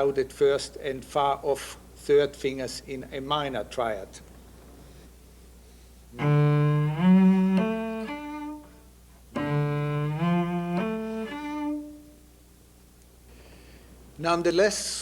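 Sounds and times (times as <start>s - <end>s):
bowed cello arpeggios: 6.2s - 12.2s.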